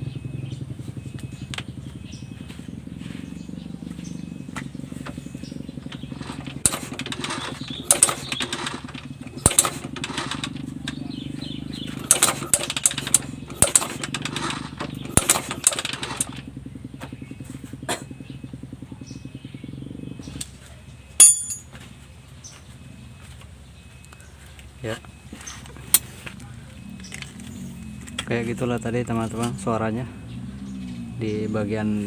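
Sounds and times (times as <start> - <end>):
motorcycle engine kick-started: 0.0 - 32.0
steady low hum: 0.0 - 32.0
sharp metallic clacks: 5.9 - 16.5.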